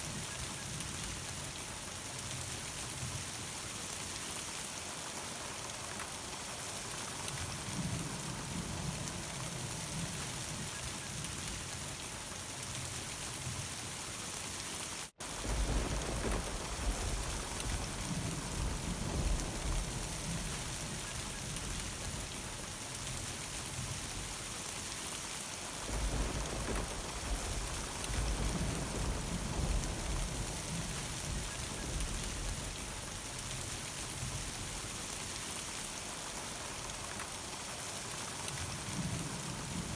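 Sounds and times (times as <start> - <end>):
heavy rain falling: 0.0 - 39.9
thunder rumbling: 15.2 - 24.4, 25.8 - 34.9.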